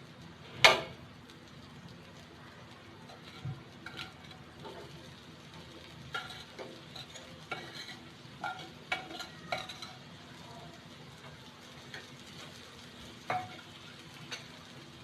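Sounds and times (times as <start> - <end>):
faint sizzle: 0.0 - 15.0
utensil scraping grill pan: 3.0 - 10.2, 11.2 - 15.0.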